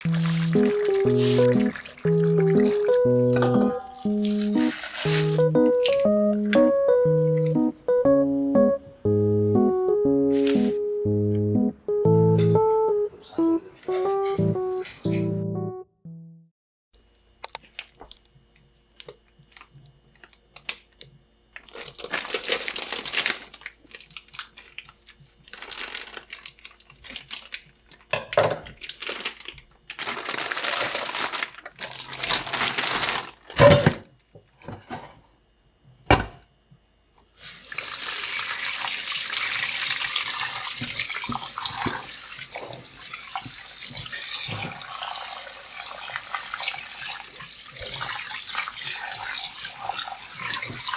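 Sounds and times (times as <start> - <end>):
tap water running into sink: 0.0 - 5.4.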